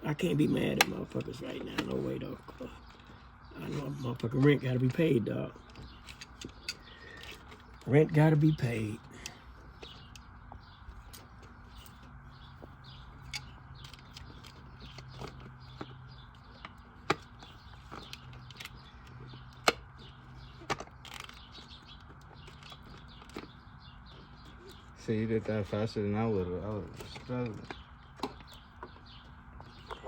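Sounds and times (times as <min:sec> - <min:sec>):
tools clicking and knocking: 0:13.1 - 0:23.5.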